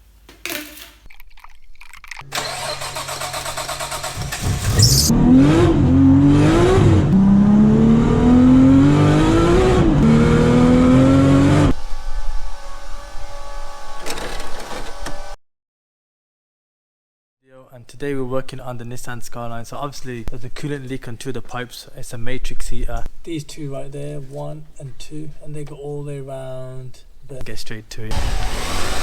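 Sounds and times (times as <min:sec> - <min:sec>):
car engine revving and accelerating: 0:04.0 - 0:11.8.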